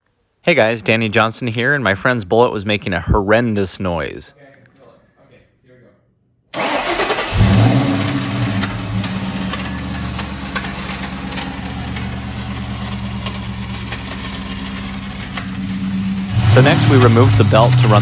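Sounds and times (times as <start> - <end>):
car engine starting and idling: 6.6 - 18.0
starter dragging with sharp clicks: 6.6 - 18.0.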